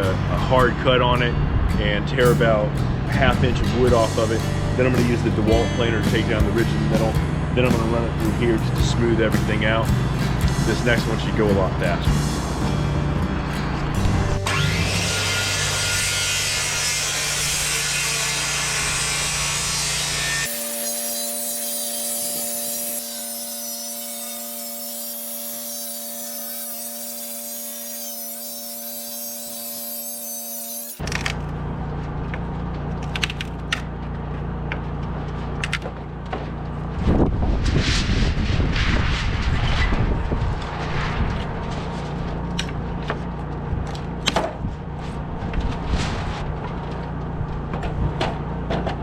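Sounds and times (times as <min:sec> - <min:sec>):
circular saw cutting wood: 0:13.9 - 0:31.3
electric planer shaving wood: 0:14.3 - 0:31.2.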